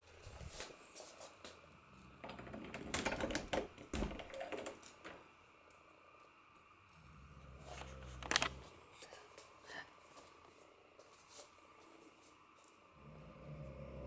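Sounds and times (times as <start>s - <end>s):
scattered clicks: 7.8s - 8.6s.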